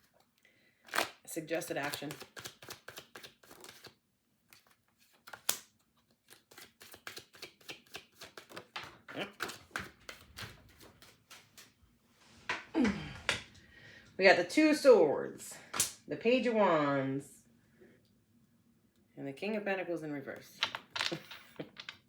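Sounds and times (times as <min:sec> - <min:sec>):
cards being shuffled: 0:00.9 - 0:11.8.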